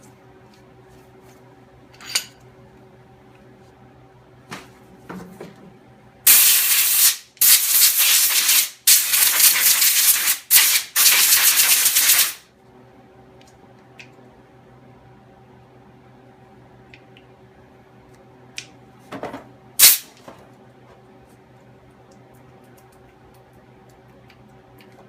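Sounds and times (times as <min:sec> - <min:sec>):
pressurised spray hissing: 0:06.3 - 0:12.4.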